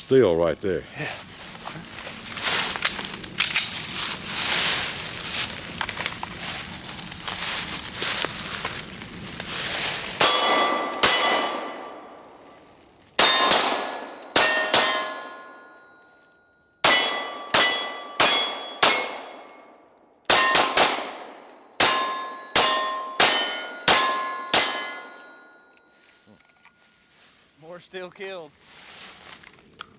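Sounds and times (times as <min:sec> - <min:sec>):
bullets clanging on steel targets: 0:10.2 - 0:12.4, 0:13.2 - 0:16.2, 0:16.8 - 0:25.9.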